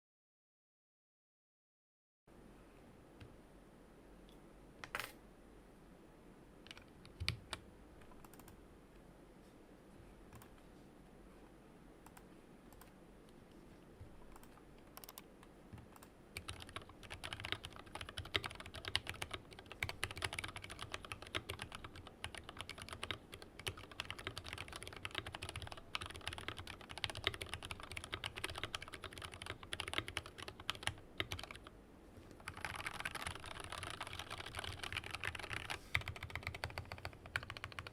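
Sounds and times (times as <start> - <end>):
typing on mechanical keyboard: 16.0 - 31.7, 32.4 - 37.9.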